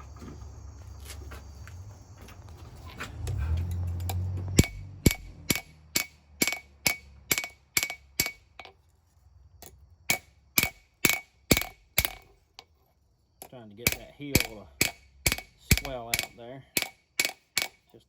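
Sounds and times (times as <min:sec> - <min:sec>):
hammer ringing on anvil: 0:04.6 - 0:08.4, 0:13.8 - 0:17.9.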